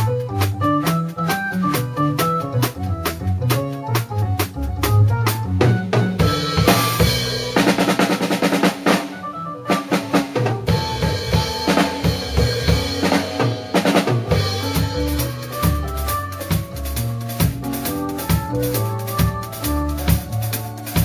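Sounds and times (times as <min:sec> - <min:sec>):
bass line and chords: 0:00.0 - 0:21.0
drum kit and percussion groove: 0:00.0 - 0:21.0.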